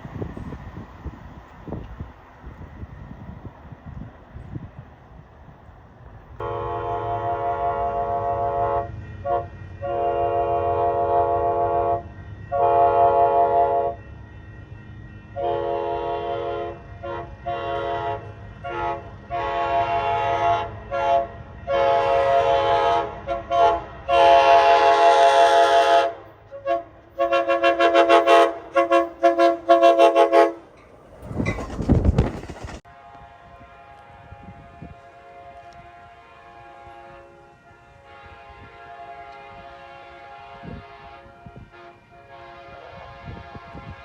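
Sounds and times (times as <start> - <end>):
low train rumble: 0.0 - 44.0
train horn chord blasts: 6.4 - 14.0, 15.3 - 31.2, 32.9 - 44.0.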